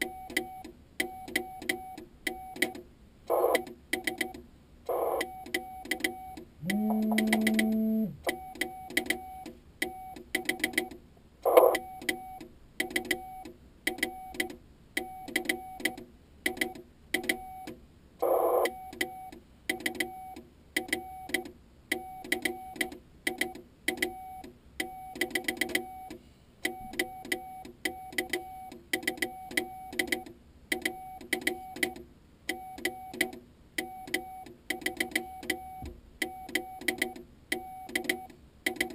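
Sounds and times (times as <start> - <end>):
morse code tone: 3.3 - 3.6, 4.9 - 5.3, 6.6 - 8.4, 18.2 - 18.7
low buzzing tone: 6.6 - 8.3
key clicks: 6.7 - 7.8.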